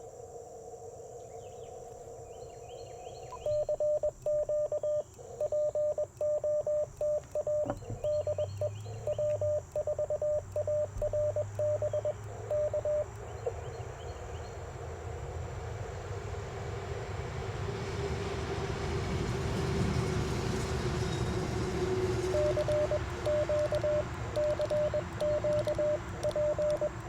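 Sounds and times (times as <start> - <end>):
faint steady low tone: 1.0 - 14.4, 22.3 - 27.0
morse code beeps: 3.2 - 13.6, 22.2 - 27.0.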